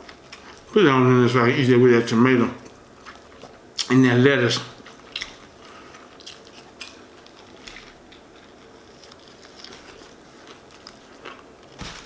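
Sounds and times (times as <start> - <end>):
food wrapping crinkling: 4.9 - 12.0.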